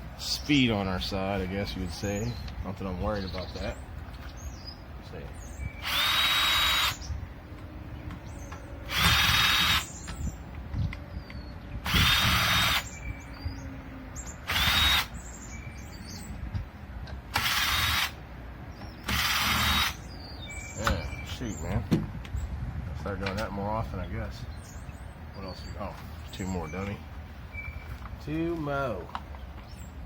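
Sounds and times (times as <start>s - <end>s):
power drill running: 5.8s - 7.0s, 8.9s - 9.9s, 11.8s - 12.9s, 14.5s - 15.1s, 17.3s - 18.2s, 19.0s - 20.0s.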